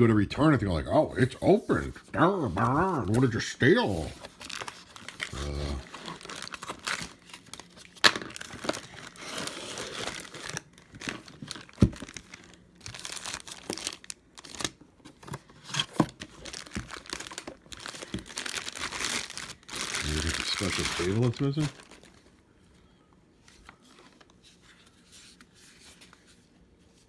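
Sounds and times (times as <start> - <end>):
packaging crinkling and tearing: 2.6 - 22.3.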